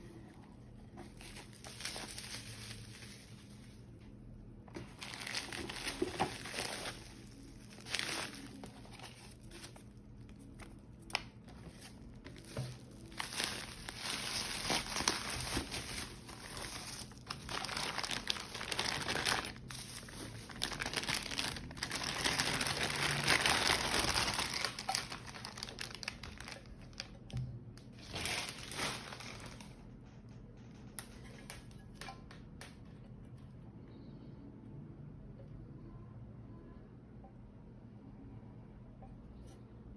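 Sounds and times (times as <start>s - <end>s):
packaging crinkling and rustling: 0.1s - 30.0s
packaging tearing: 4.9s - 10.0s, 11.8s - 27.1s, 28.0s - 29.7s.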